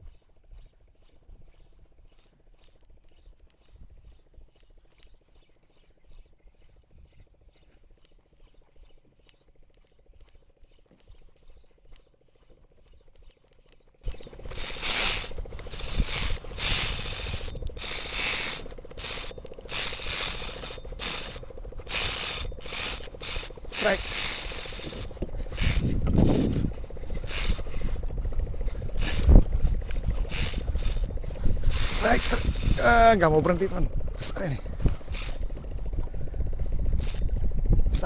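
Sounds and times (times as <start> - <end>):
fishing reel drag buzzing: 14.1 - 35.6, 36.9 - 37.3.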